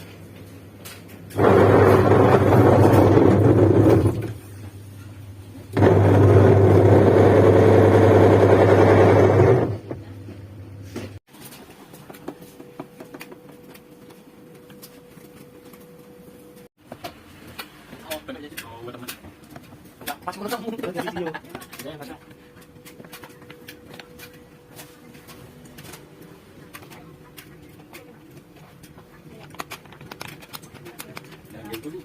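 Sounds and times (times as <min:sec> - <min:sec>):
washing machine motor humming: 0:01.3 - 0:11.2.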